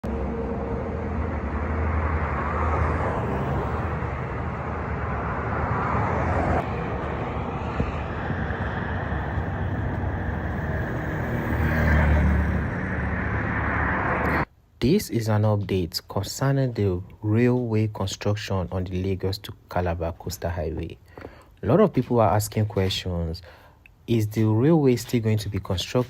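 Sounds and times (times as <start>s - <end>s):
low engine hum: 0.0s - 14.5s
vehicles driving past: 0.0s - 14.5s.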